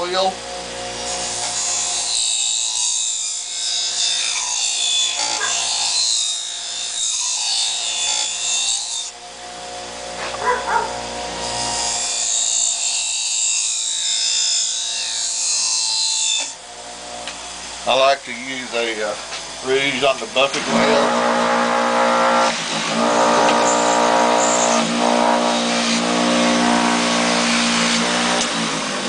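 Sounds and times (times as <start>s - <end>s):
sharpener motor running: 3.8s - 8.6s, 19.6s - 29.0s.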